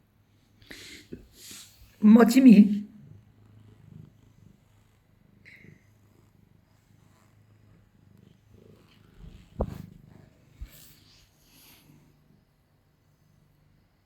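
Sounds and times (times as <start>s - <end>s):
cat purring: 2.9s - 14.0s
sharp thump: 9.6s - 9.9s.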